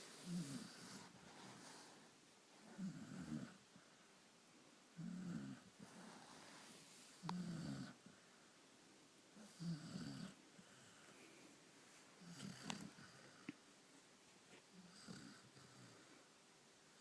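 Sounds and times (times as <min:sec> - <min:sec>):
person snoring: 0:00.2 - 0:01.1.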